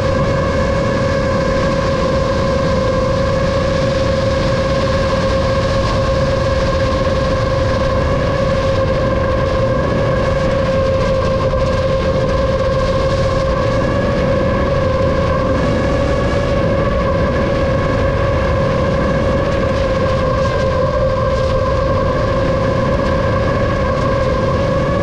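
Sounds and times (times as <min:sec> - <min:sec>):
drone propellers whining: 0:00.0 - 0:25.0
rushing noise: 0:00.0 - 0:25.0.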